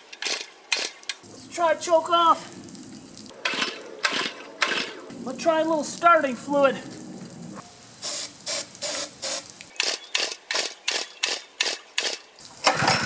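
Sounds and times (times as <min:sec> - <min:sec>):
aerosol spray hissing bursts: 0:08.0 - 0:10.2.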